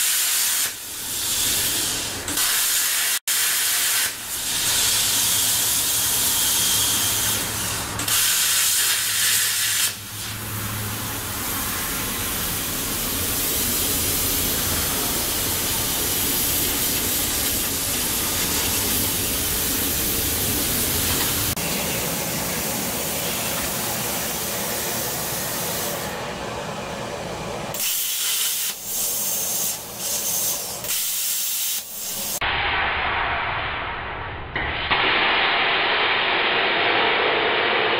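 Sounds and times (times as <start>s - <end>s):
plasma cutter torch hissing: 0.0s - 26.2s, 27.8s - 33.3s.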